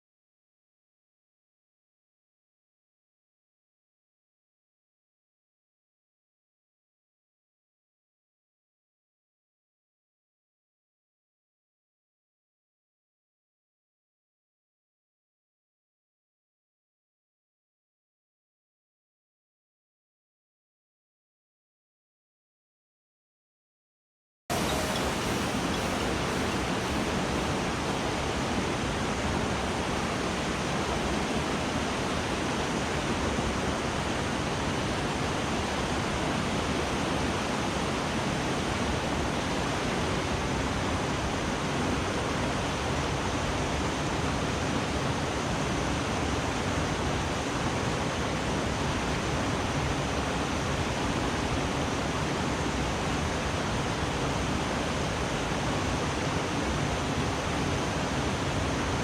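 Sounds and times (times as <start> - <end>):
stream rushing over rocks: 24.5 - 59.0.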